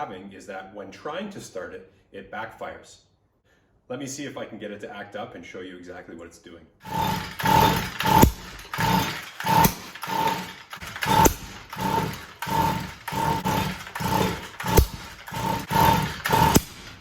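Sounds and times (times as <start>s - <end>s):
recoil starter rope whirring: 6.8s - 17.0s
engine backfiring pops: 6.9s - 17.0s.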